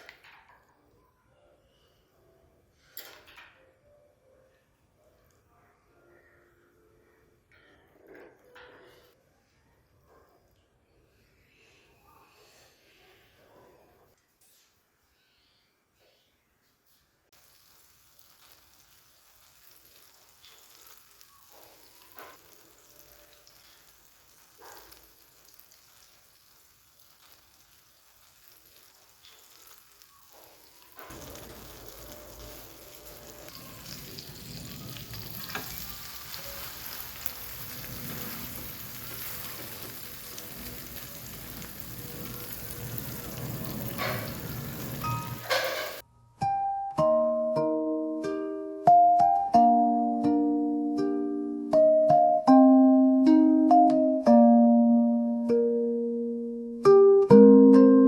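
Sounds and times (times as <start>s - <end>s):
food sizzling in a pan: 17.3s - 46.0s.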